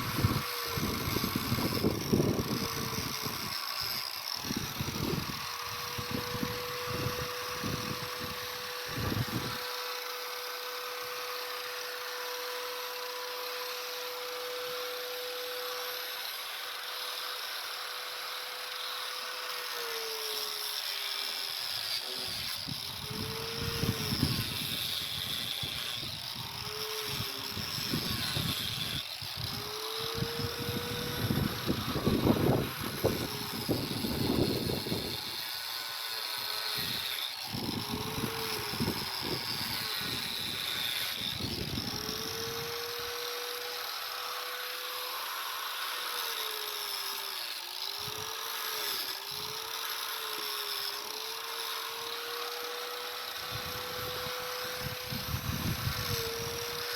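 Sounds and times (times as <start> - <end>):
power grinder grinding mortar: 0.0 - 56.9.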